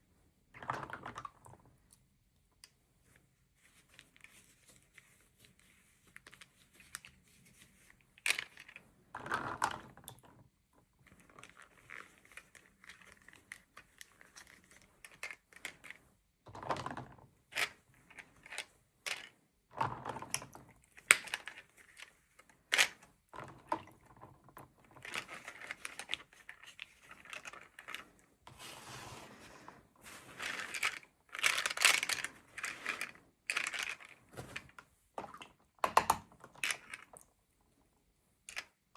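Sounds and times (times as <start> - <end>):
plastic and paper crinkling: 24.9 - 34.8.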